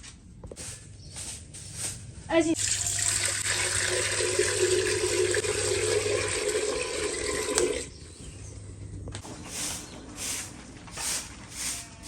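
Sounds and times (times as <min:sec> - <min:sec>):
water pouring into a container: 0:02.6 - 0:07.9.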